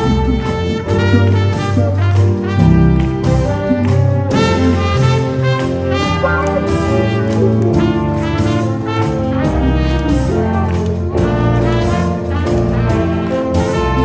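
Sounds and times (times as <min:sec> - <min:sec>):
big band jazz orchestra playing: 0:00.0 - 0:14.0
brass section sustained chords: 0:04.3 - 0:13.0
steady bass: 0:06.0 - 0:08.3.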